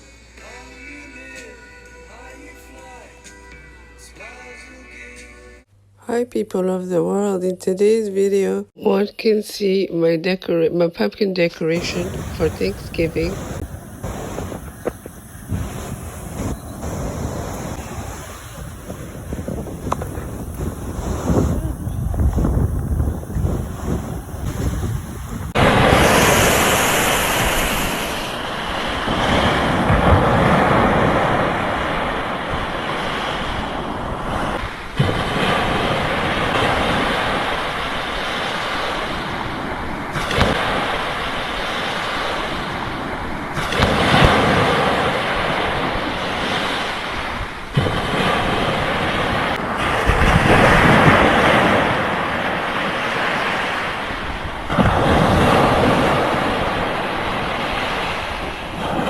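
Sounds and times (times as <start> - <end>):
sea waves washing ashore: 11.7 - 59.0
wind on microphone: 11.8 - 59.0.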